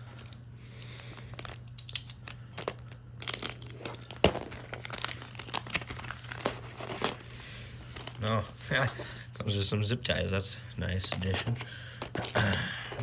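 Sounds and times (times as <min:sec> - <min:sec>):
plastic packaging crinkling: 0:00.0 - 0:09.2
faint steady hum: 0:00.0 - 0:13.0.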